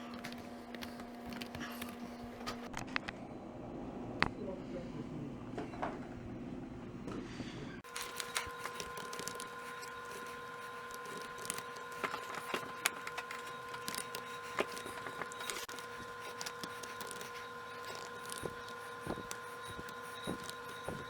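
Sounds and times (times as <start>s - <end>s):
high-pitched electrical hum: 0.0s - 21.0s.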